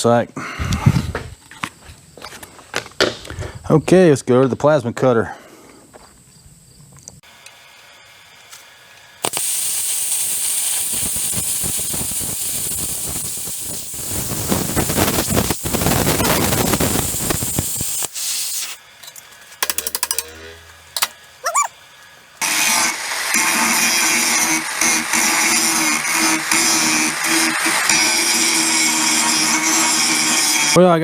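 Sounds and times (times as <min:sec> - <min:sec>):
plasma cutter arc hissing: 0:09.2 - 0:20.4.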